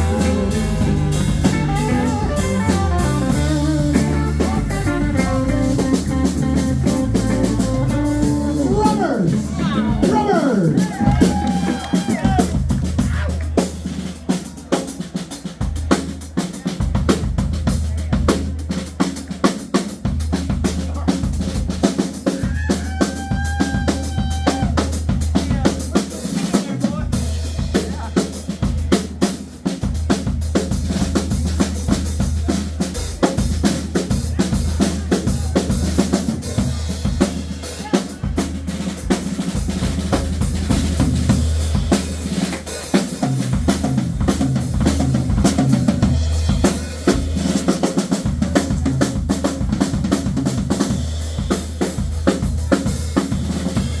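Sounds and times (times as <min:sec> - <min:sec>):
short held notes: 0:00.0 - 0:11.3
low bass line: 0:00.0 - 0:11.5
rock drum kit playing: 0:00.0 - 0:54.0.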